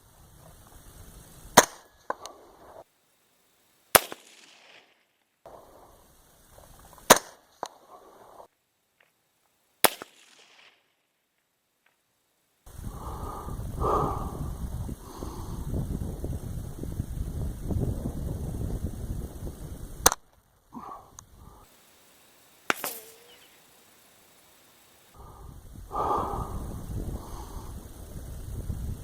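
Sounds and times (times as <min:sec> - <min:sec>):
rifle bullets cracking past: 0:03.9 - 0:05.6, 0:07.0 - 0:07.8, 0:09.8 - 0:10.9, 0:22.6 - 0:23.8
wind rumbling on microphone: 0:12.7 - 0:21.7, 0:25.1 - 0:29.0
distant gunshot report: 0:22.7 - 0:23.7.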